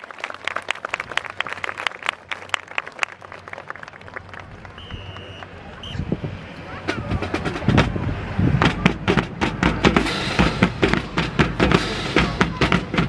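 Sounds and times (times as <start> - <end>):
marching drum corps: 6.8 - 13.0.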